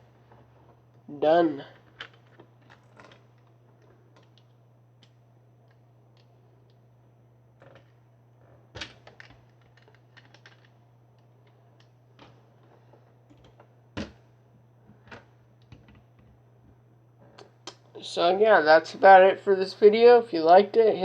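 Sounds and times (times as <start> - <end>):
low electrical hum: 0.0 - 21.0
plastic bricks clicking: 8.8 - 10.8.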